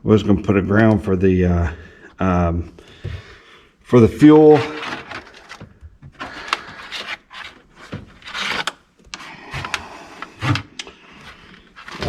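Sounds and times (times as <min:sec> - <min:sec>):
wires scraping: 0:04.0 - 0:12.0.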